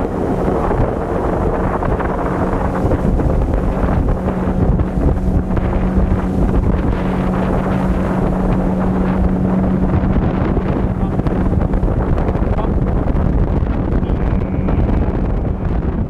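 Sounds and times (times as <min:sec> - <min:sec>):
outboard motor humming: 0:00.0 - 0:16.0
rushing water: 0:00.0 - 0:16.0
wind buffeting microphone: 0:00.0 - 0:16.0.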